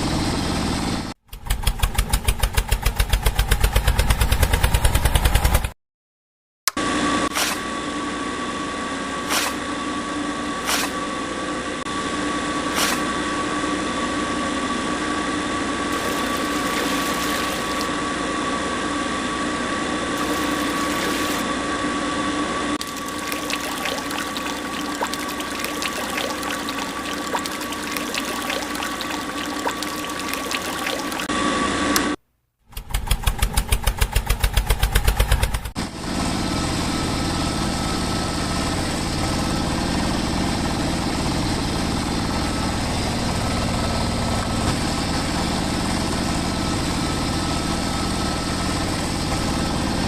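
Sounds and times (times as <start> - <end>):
wet crackling: 15.9 - 17.9, 20.2 - 21.4, 22.8 - 31.3.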